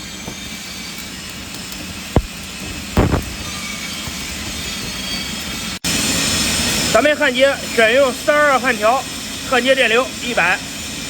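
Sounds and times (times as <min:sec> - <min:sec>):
welding arc crackling hiss: 0:00.0 - 0:05.8
short thumps: 0:02.2 - 0:03.6.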